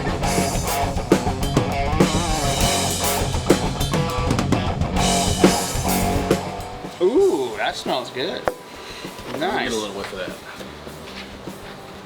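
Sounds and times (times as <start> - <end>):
bass: 0.0 - 7.9, 9.7 - 12.0
drum kit: 0.0 - 12.0
guitar: 0.0 - 12.0.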